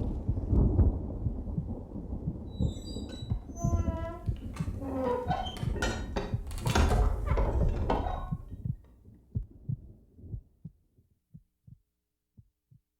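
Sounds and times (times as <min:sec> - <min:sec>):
heartbeat of low thuds: 0:00.0 - 0:11.8.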